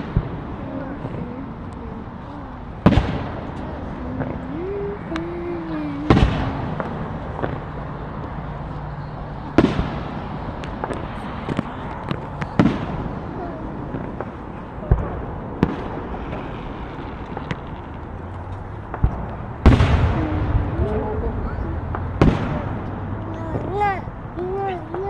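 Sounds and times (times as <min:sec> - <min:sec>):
fireworks banging: 0:00.0 - 0:25.0
small firework pops: 0:02.8 - 0:08.4, 0:09.5 - 0:21.0, 0:21.9 - 0:23.7.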